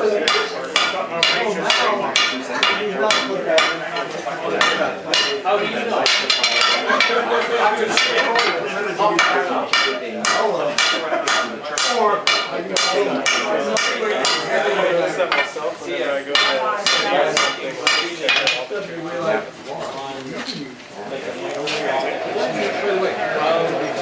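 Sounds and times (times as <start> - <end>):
hammer striking metal on anvil: 4.6 - 5.4, 9.2 - 14.5.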